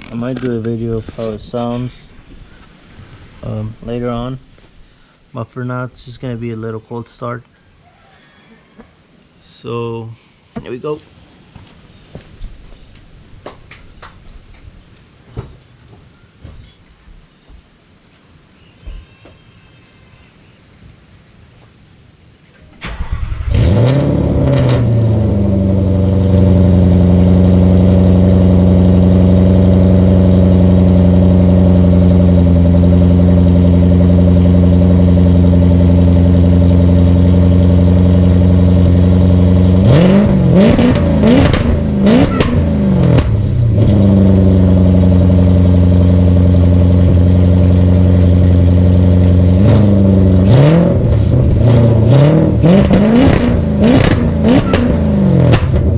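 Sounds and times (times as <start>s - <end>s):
car engine starting and revving: 22.8s - 55.9s.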